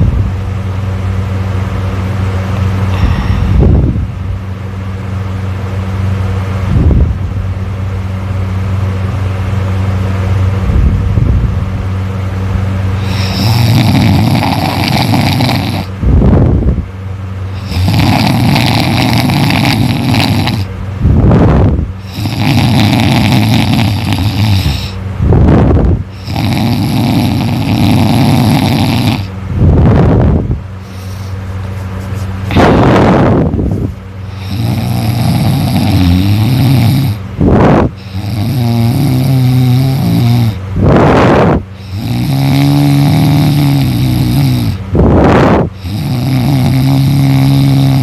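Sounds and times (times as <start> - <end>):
steady low hum: 0.0 - 48.0
person snoring loudly: 2.9 - 3.8, 13.0 - 15.9, 17.5 - 20.7, 21.3 - 30.2, 32.5 - 33.5, 34.3 - 48.0.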